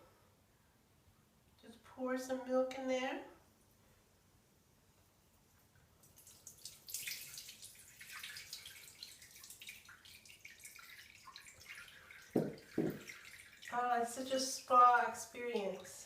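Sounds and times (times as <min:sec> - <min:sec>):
milk splashing and dripping: 0:06.0 - 0:13.8.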